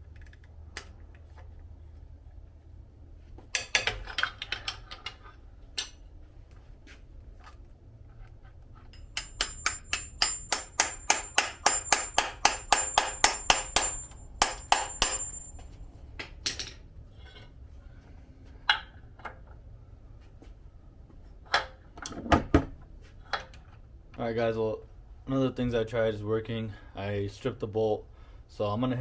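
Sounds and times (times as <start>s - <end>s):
high metallic ring: 8.9s - 15.8s
hammer striking metal: 9.0s - 16.7s.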